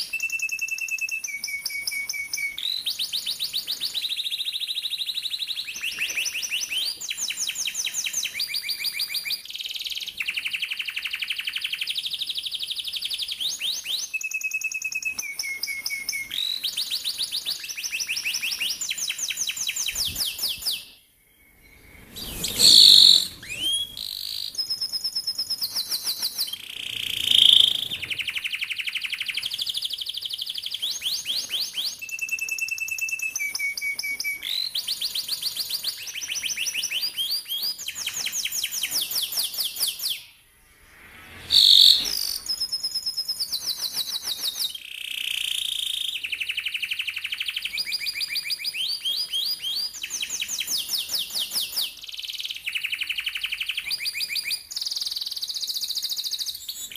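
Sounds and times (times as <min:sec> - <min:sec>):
canary singing trills: 0:13.5 - 0:40.3, 0:41.5 - 0:42.8.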